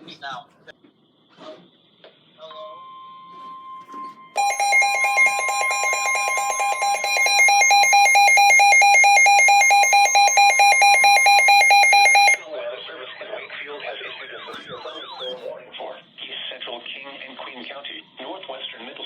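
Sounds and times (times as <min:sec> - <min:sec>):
steady single-pitch alarm tone: 0:03.7 - 0:12.4
pulsing electronic alarm: 0:04.4 - 0:12.4.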